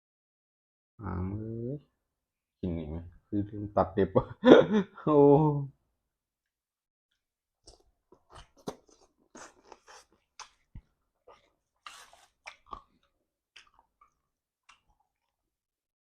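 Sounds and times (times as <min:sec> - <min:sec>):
mouth chewing and crunching: 0:07.6 - 0:15.5.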